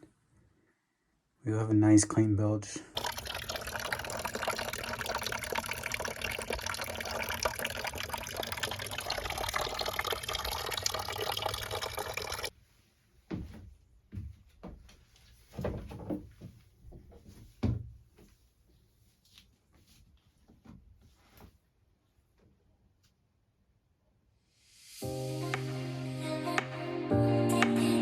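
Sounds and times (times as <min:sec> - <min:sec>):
liquid rushing: 0:03.0 - 0:12.5.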